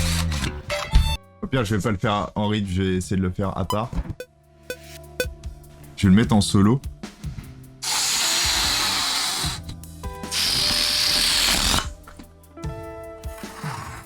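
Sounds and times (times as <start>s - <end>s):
air hissing: 7.8s - 12.0s.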